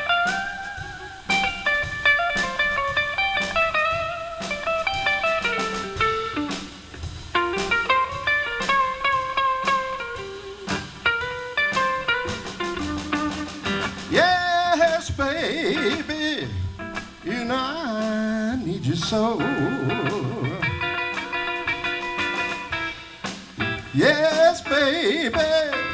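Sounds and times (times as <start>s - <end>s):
blues guitar solo: 0.0s - 25.9s
person singing: 14.1s - 21.4s, 23.6s - 25.9s.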